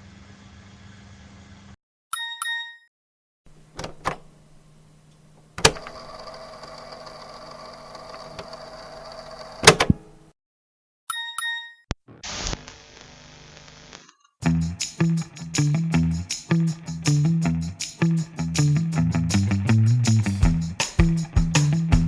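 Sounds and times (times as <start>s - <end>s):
clicks: 5.1s - 7.0s
static hiss: 12.2s - 14.0s.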